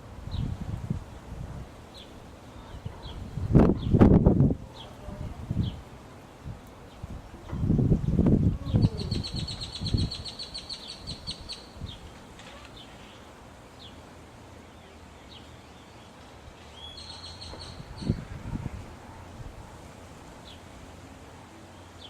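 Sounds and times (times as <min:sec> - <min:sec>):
mockingbird calling: 0:08.6 - 0:12.0.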